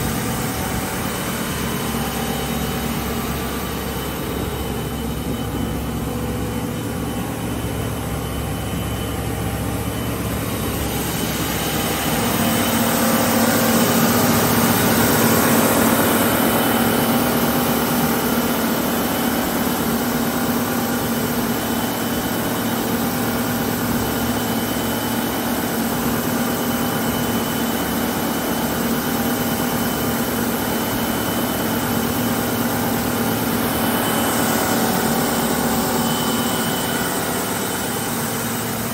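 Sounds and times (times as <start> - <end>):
steady hum: 0.0 - 19.9, 27.9 - 38.9.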